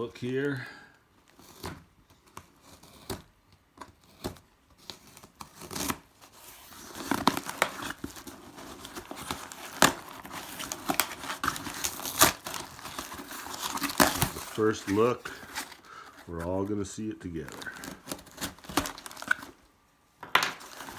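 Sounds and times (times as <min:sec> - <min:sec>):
packaging tearing and crinkling: 0:01.2 - 0:19.7, 0:20.5 - 0:20.9.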